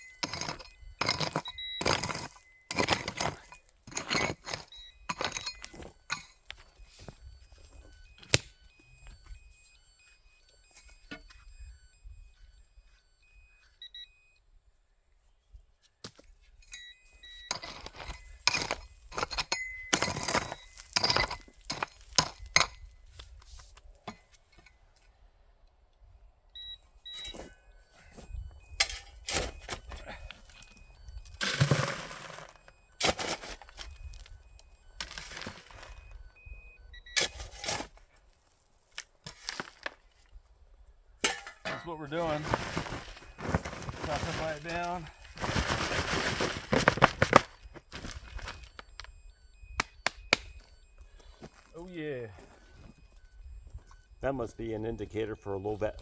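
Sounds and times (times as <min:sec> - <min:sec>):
rocks and gravel scraping: 0:00.0 - 0:08.2, 0:17.4 - 0:24.5, 0:27.3 - 0:34.4, 0:35.0 - 0:36.2, 0:39.0 - 0:40.4, 0:41.2 - 0:49.1, 0:54.2 - 0:56.0
metal detector beeps: 0:00.0 - 0:14.6, 0:15.4 - 0:25.2, 0:26.0 - 0:38.2, 0:39.0 - 0:56.0.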